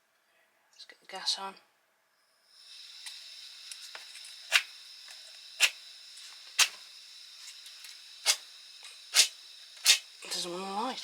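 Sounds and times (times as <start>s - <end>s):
gas camping stove hissing: 2.4s - 11.0s
sharp igniter clicks: 7.5s - 10.1s.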